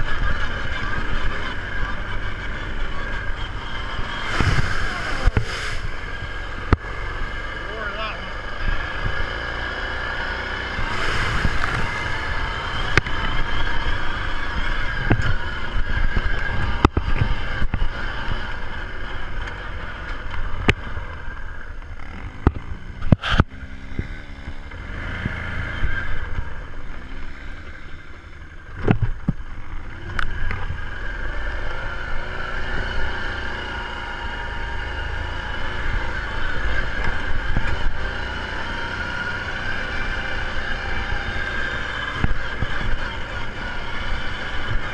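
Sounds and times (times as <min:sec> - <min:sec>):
atv engine running: 0:00.0 - 0:44.9.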